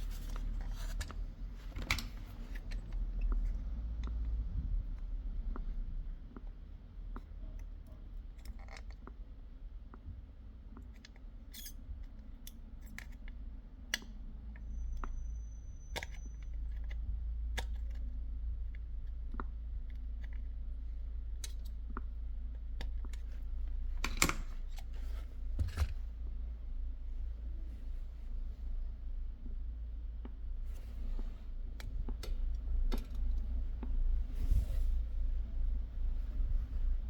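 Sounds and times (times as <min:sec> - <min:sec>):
low steady hum: 0:00.0 - 0:37.0.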